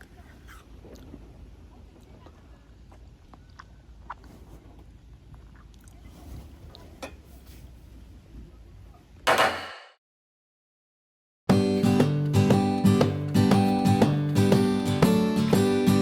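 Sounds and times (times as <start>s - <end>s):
loud sharp metallic clang: 9.3s - 10.0s.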